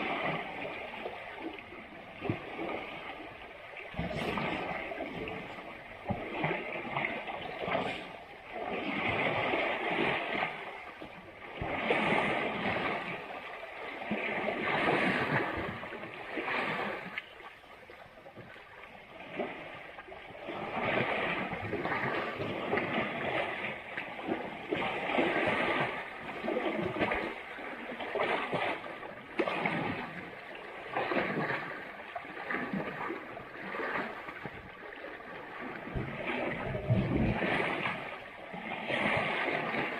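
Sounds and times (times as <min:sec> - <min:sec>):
elephants splashing water: 0:04.0 - 0:10.8.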